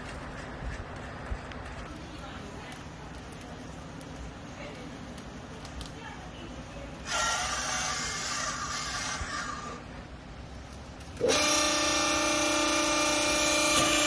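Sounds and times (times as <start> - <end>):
loud buzzing machine whine: 11.2 - 14.0.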